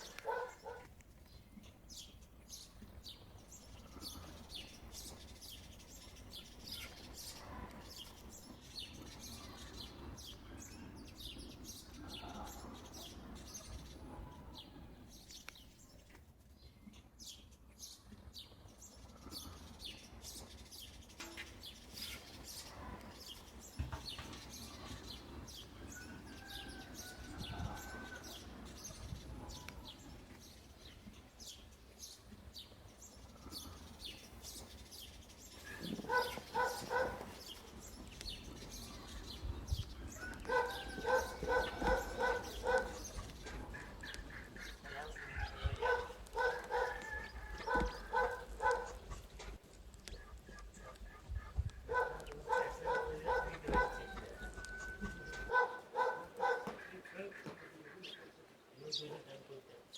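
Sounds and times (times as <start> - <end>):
lower bird calls: 0.0 - 16.0, 35.5 - 49.4, 50.0 - 58.3
birds chirping faintly: 0.0 - 59.9.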